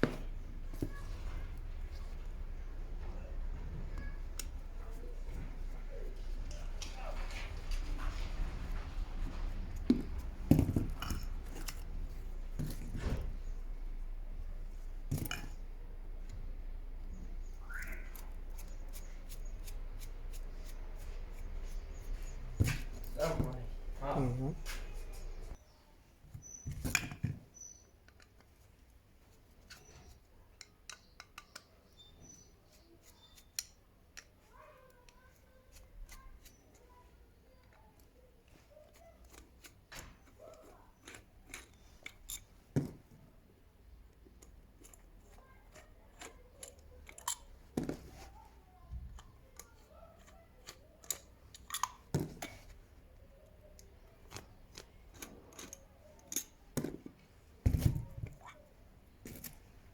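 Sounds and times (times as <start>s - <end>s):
small clicks and knocks: 29.6s - 32.4s, 44.1s - 52.8s, 53.4s - 59.9s.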